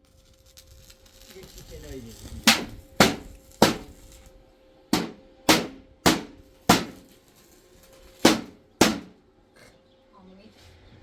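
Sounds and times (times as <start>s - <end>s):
hammer striking metal: 2.5s - 3.9s, 5.0s - 7.1s, 8.3s - 9.2s.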